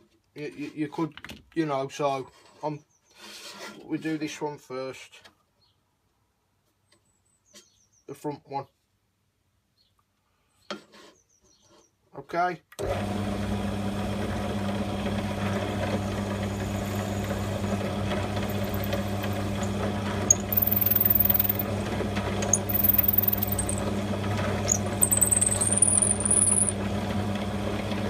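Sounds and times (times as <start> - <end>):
drill press motor humming: 12.8 - 28.0
drill bit squealing through wood: 16.1 - 21.8, 22.4 - 24.0, 24.6 - 26.8.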